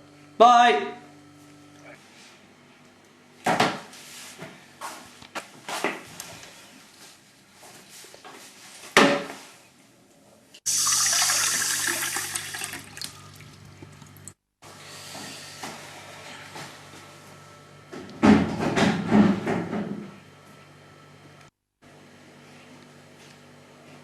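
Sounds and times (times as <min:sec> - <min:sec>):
toilet flushing: 0:10.7 - 0:14.4.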